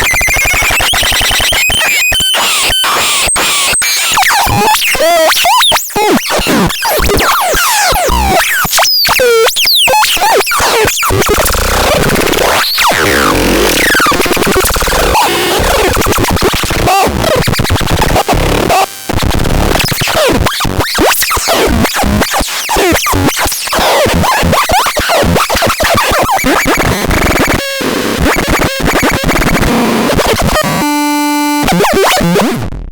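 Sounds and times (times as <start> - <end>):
harsh glitchy electronic noise: 0.0 - 32.8.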